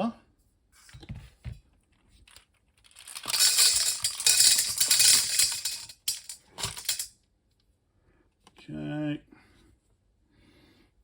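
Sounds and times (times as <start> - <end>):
plastic keys clattering into colander: 2.8 - 7.1.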